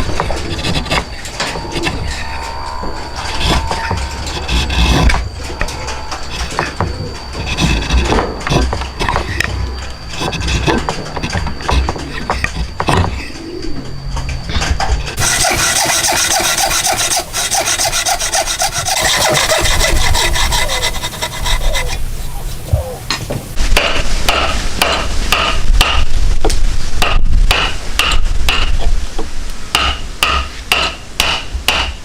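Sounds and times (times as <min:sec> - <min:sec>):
hand tool rasping on wood: 0:07.4 - 0:09.5, 0:10.1 - 0:12.4, 0:15.2 - 0:23.2.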